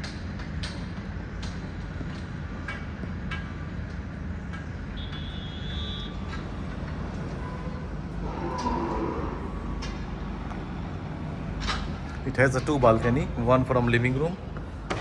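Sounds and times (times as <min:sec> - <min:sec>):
low urban rumble: 0:00.0 - 0:15.0.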